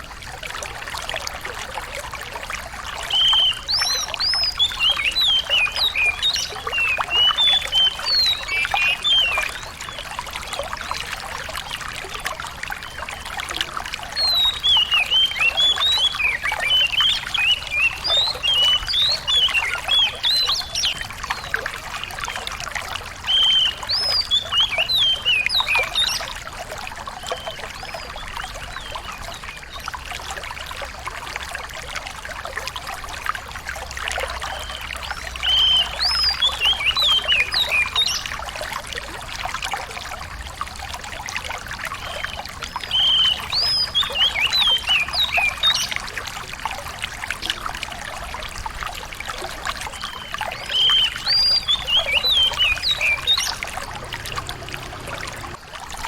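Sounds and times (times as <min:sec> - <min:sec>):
water trickling: 0:00.0 - 0:56.0
songbird chirping and trilling: 0:03.1 - 0:10.2, 0:14.2 - 0:21.6, 0:23.3 - 0:26.4, 0:34.5 - 0:38.3, 0:50.0 - 0:55.6.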